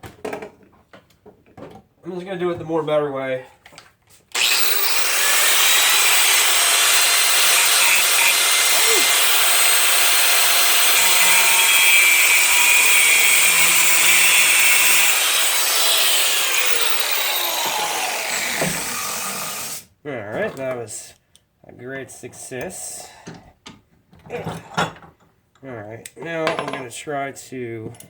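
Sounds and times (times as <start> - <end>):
power tool cutting steel: 4.3 - 19.9.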